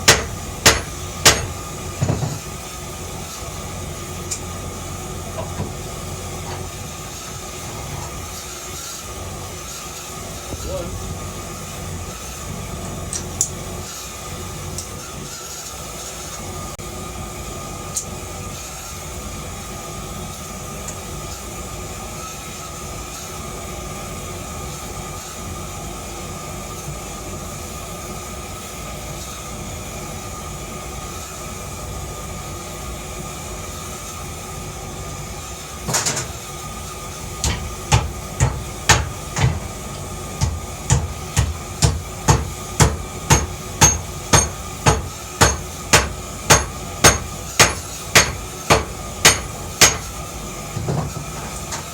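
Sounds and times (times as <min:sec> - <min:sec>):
hammer striking metal: 0:00.0 - 0:02.4, 0:37.4 - 0:50.2.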